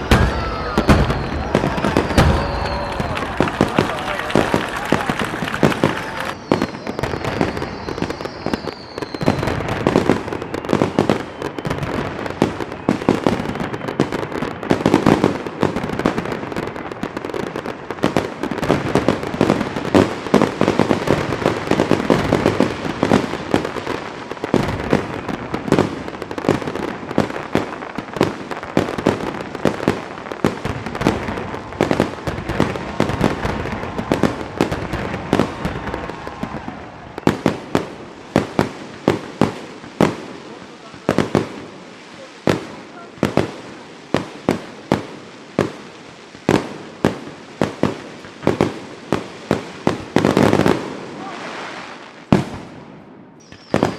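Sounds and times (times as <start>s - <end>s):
high falling whistle: 0.0s - 6.4s
fireworks bangs and crackles: 0.0s - 53.9s.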